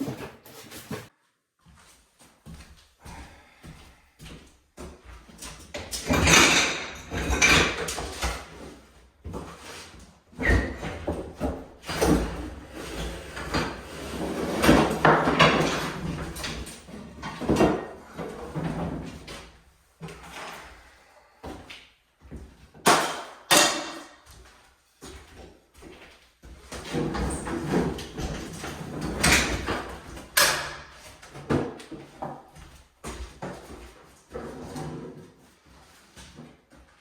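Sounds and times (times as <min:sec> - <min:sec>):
cabinets knocking and scraping: 0:00.0 - 0:01.1, 0:05.7 - 0:08.7, 0:10.4 - 0:19.3, 0:26.9 - 0:31.8.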